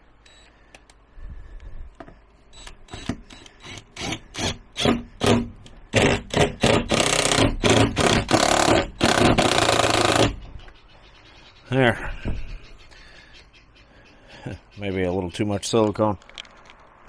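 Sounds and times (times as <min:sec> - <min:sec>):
caulking gun squeeze strokes: 0:02.6 - 0:10.4
sealant rubbing and scraping: 0:03.1 - 0:10.5.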